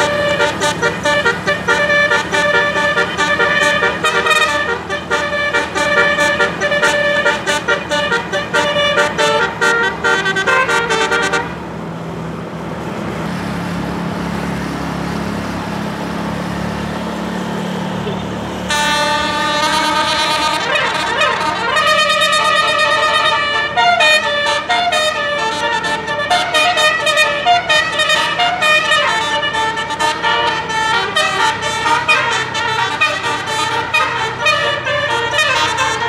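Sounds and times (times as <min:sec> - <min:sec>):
bus horn playing melody: 0:00.0 - 0:11.7, 0:16.9 - 0:36.0
vehicle engine and road noise: 0:00.0 - 0:36.0.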